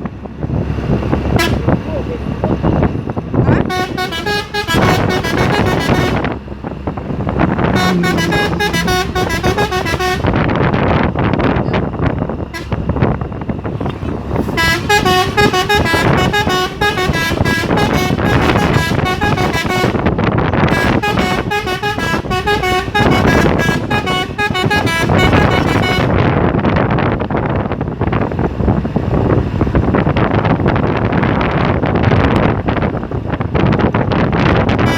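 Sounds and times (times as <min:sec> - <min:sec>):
truck engine and road noise: 0:00.0 - 0:34.9
truck horn melody: 0:01.3 - 0:01.8, 0:03.4 - 0:11.7, 0:12.5 - 0:13.2, 0:14.1 - 0:26.4.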